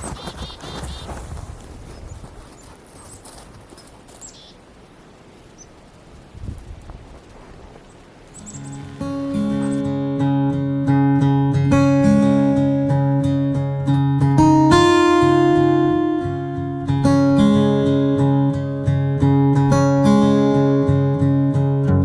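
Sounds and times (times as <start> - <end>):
acoustic guitar strumming chords: 8.4 - 22.0.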